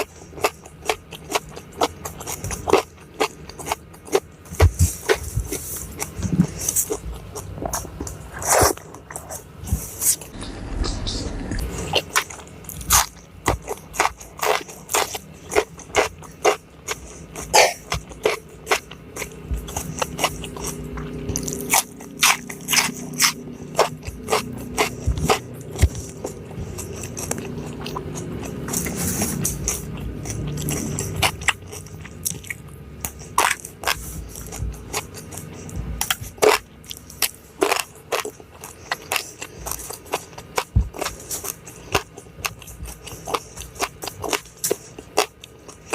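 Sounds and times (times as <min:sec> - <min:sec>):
chewing food: 0:00.0 - 0:10.4, 0:11.6 - 0:45.9
crunchy bites of food: 0:11.6 - 0:45.9.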